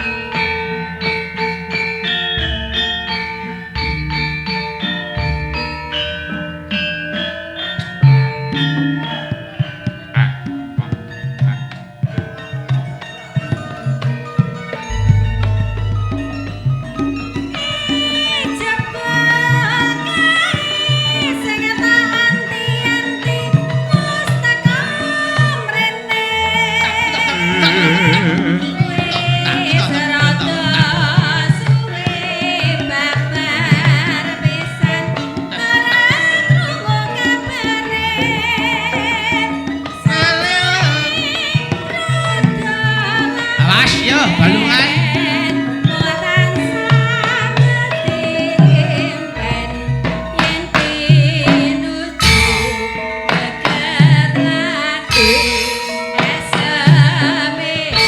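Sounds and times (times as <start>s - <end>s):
high wavering melody: 0.0s - 58.0s
steady drum beat: 14.8s - 20.7s, 26.4s - 32.1s, 42.5s - 45.4s, 49.6s - 58.0s.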